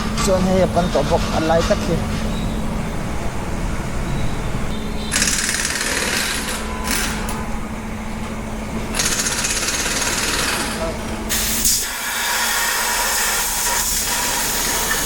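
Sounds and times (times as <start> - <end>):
low machine hum: 0.0 - 12.9
compressed air hissing: 11.3 - 15.0.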